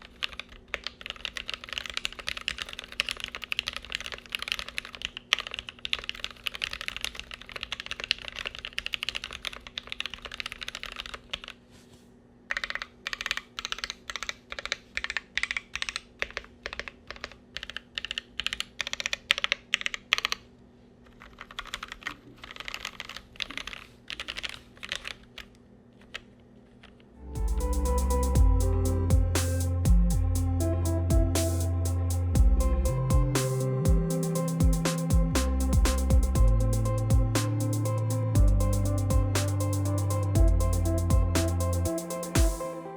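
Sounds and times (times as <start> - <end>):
mechanical keyboard typing: 0.0 - 11.6, 12.5 - 20.5, 21.1 - 26.3.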